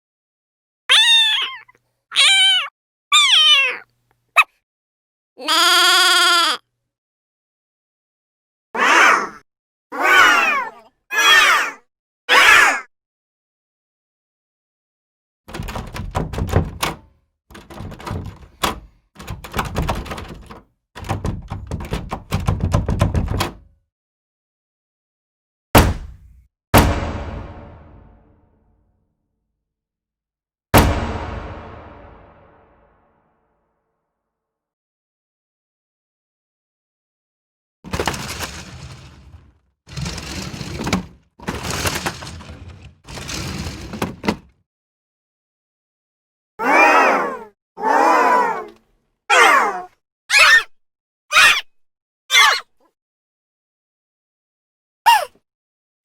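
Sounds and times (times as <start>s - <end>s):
rapid knocks and thuds: 15.5s - 23.7s, 25.8s - 27.6s.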